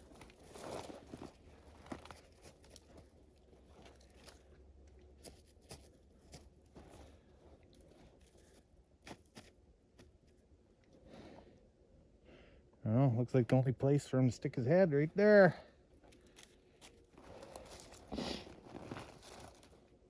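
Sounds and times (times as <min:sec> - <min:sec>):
faint crunches and clicks: 0:00.0 - 0:11.0, 0:16.0 - 0:20.0.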